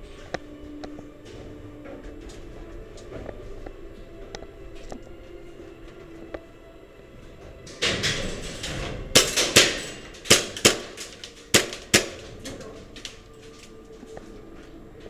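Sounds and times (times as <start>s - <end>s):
airsoft gunfire: 9.2s - 12.2s
pellets striking hard surfaces: 9.2s - 12.3s.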